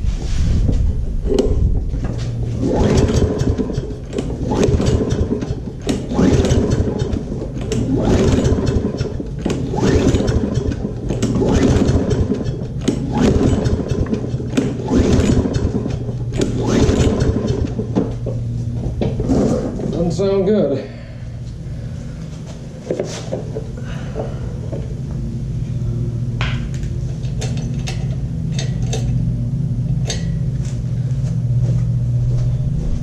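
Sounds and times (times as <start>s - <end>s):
mower engine cranking: 0.9s - 20.5s, 26.7s - 31.2s.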